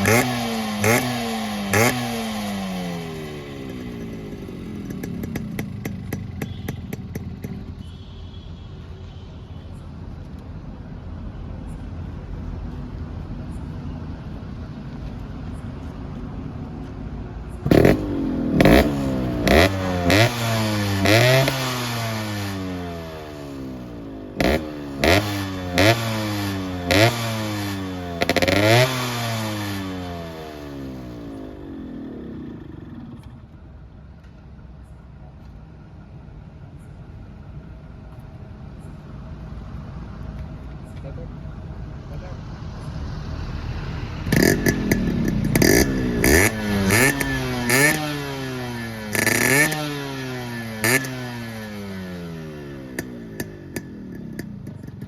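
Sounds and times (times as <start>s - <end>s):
motorcycle engine revving: 0.0s - 8.4s, 17.6s - 33.7s, 42.0s - 55.0s.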